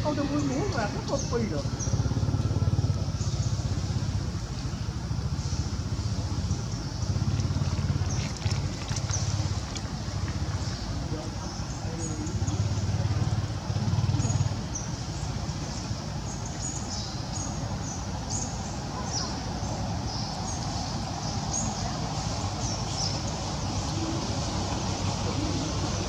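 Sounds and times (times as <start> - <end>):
small birds chirping: 0.0 - 26.0.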